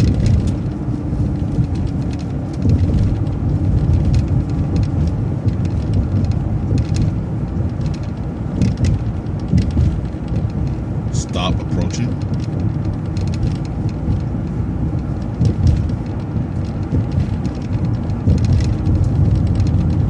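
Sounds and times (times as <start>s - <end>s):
bus engine and road rumble: 0.0s - 20.0s
light rattles and clicks: 0.0s - 20.0s.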